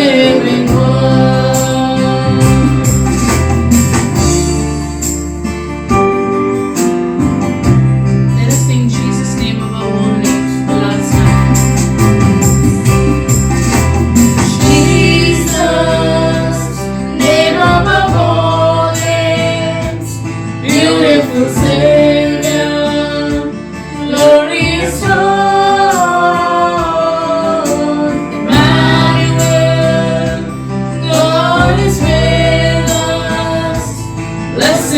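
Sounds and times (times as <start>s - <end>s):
voices singing worship song: 0.0s - 5.2s, 8.4s - 34.9s
band with steady beat: 0.0s - 34.9s.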